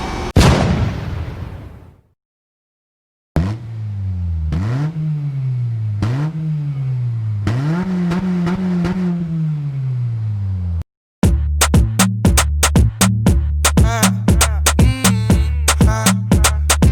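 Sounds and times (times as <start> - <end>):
car engine revving: 3.4 - 10.7.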